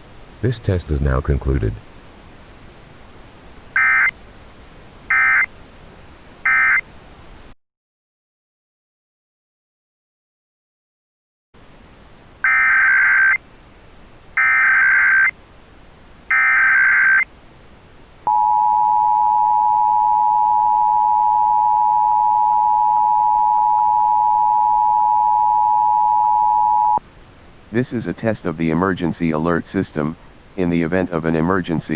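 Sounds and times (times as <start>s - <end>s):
two-tone attention signal: 18.3s - 27.0s.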